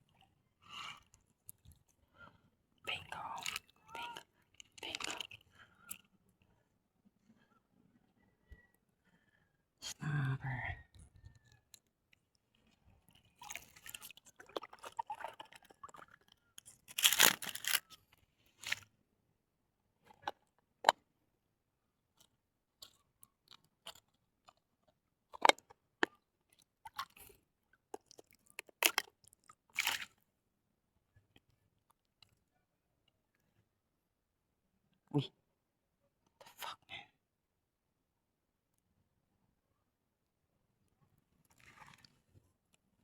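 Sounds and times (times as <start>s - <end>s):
close rustling and crunching: 16.6s - 18.9s.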